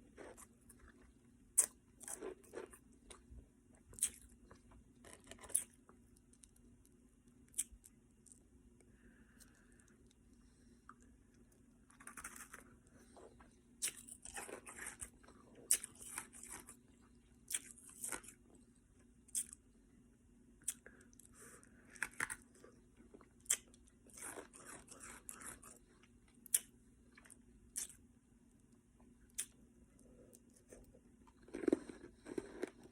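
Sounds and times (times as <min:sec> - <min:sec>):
ice being chewed: 0:22.0 - 0:25.8, 0:30.7 - 0:32.9.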